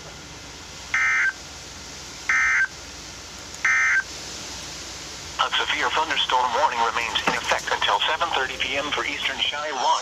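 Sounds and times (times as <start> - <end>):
buzzy two-tone digital squawk: 1.0 - 1.4, 2.3 - 2.7, 3.7 - 4.0.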